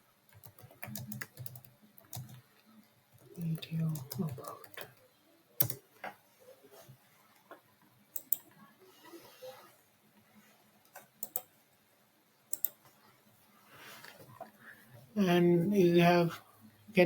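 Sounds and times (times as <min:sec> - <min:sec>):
computer mouse clicking: 0:00.3 - 0:02.4, 0:03.2 - 0:05.0, 0:05.6 - 0:05.8, 0:08.1 - 0:08.6, 0:10.8 - 0:11.5, 0:12.5 - 0:12.9.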